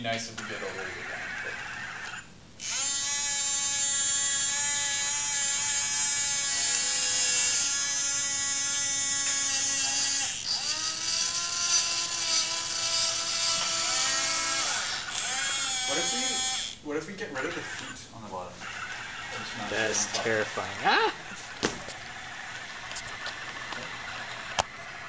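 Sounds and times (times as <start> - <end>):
robot arm motors whining: 0.4 - 16.8, 18.6 - 20.4.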